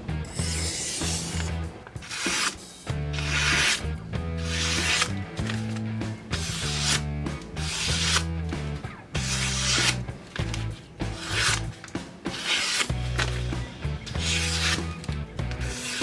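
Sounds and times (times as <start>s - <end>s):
background music: 0.0s - 16.0s
abrasive rubbing on knife: 0.3s - 5.8s, 6.4s - 7.0s, 9.2s - 10.0s, 10.6s - 11.7s, 12.3s - 16.0s.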